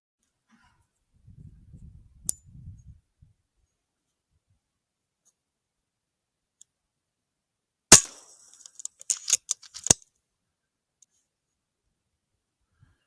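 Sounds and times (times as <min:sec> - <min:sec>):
air rifle shot: 0:07.9 - 0:08.4
clicks and rattles: 0:08.4 - 0:10.0.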